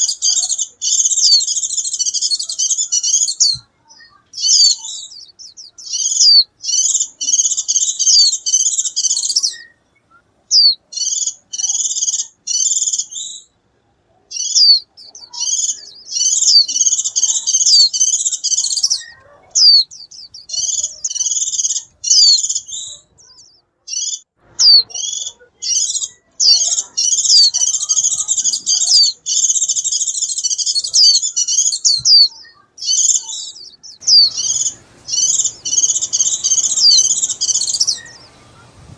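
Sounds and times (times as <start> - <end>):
bird twittering song: 0.0 - 13.6, 14.3 - 38.9.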